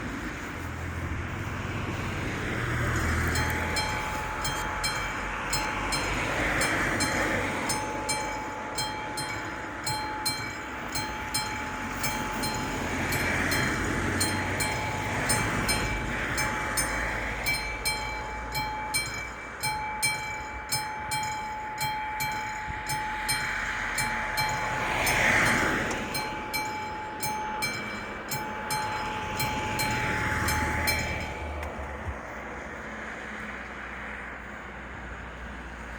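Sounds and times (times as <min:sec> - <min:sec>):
diesel train passing: 0:00.0 - 0:35.9
level crossing warning bell: 0:02.0 - 0:33.5
steady high tone: 0:03.1 - 0:31.9.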